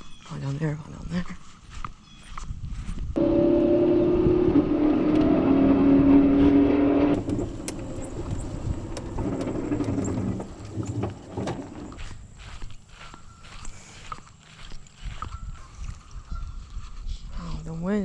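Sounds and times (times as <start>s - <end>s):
motor humming: 3.2s - 12.0s
faint rustling: 7.1s - 12.7s.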